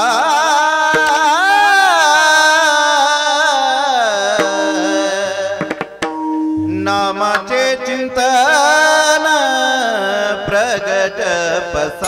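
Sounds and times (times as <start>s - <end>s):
person singing ornamented vowel: 0.0s - 5.8s.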